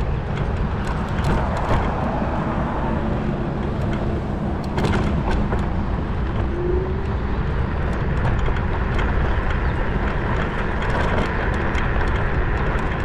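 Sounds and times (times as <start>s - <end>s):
motorcycle wind and running noise: 0.0s - 13.0s.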